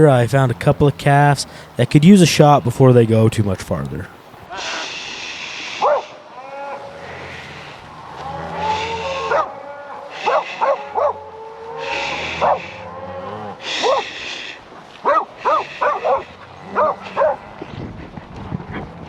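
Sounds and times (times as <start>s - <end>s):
cattle bawling: 3.7s - 19.0s
dogs barking: 5.8s - 6.2s, 9.2s - 11.3s, 11.9s - 12.8s, 13.6s - 14.2s, 15.0s - 17.5s.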